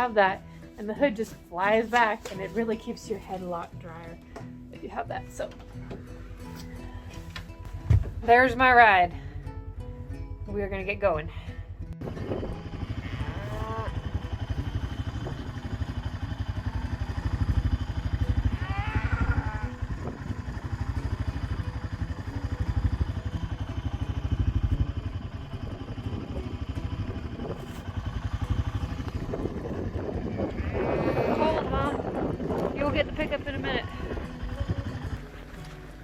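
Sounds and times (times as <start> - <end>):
four-wheeler engine revving: 8.0 - 36.0.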